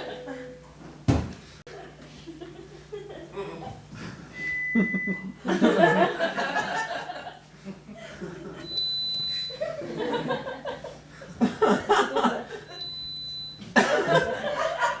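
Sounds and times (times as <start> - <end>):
people laughing: 1.7 - 3.8, 4.8 - 8.7, 9.5 - 12.8, 13.8 - 15.0
high-pitched test beeps: 4.4 - 5.5, 8.6 - 9.7, 12.8 - 13.6.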